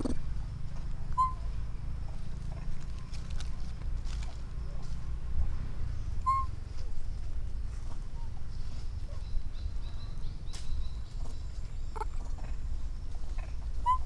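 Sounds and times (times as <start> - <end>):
baby monkey squeaking: 1.2 - 1.4, 6.2 - 6.6, 13.4 - 14.0.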